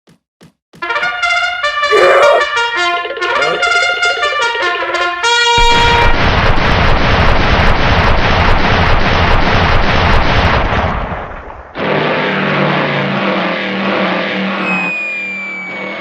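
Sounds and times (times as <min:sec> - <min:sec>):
noisy rumble: 0:05.6 - 0:14.6
pulsing rumbling din: 0:05.6 - 0:14.7.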